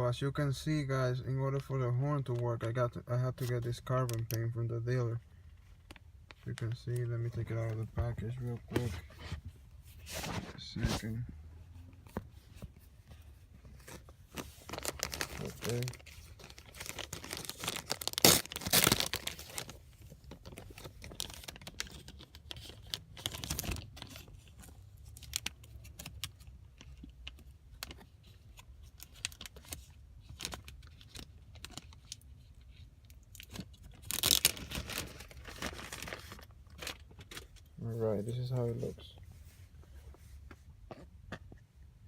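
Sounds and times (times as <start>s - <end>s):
packaging rustling and crinkling: 13.6s - 37.7s.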